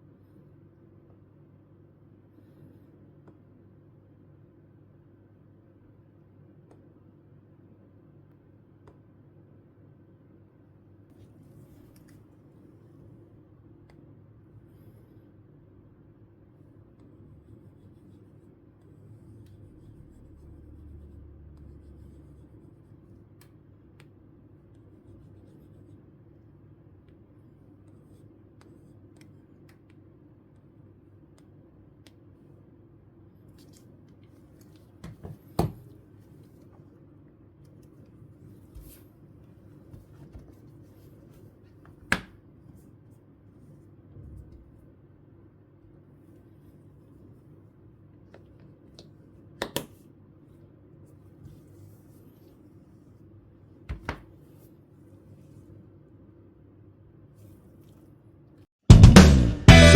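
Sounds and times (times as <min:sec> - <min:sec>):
low background hum: 0:00.0 - 0:59.9
stylus scratching on tablet screen: 0:17.0 - 0:23.4, 0:24.6 - 0:26.2.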